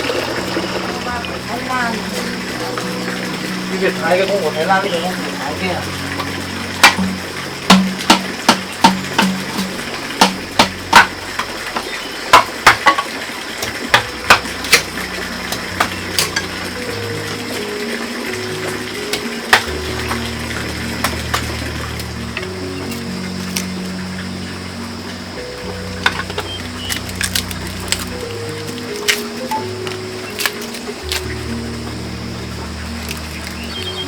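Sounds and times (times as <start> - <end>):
soft background music: 0.0 - 34.0
utensils knocking against dishes: 6.8 - 16.5.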